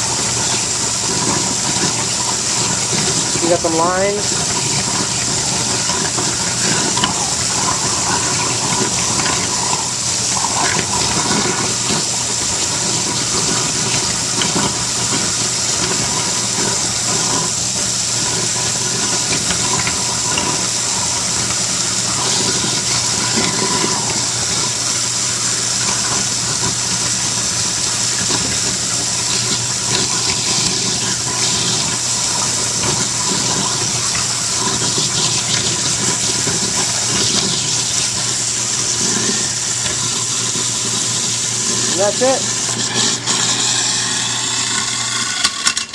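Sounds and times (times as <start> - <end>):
garbage disposal grinding: 0.0 - 45.9
tap water pouring into sink: 0.0 - 45.9.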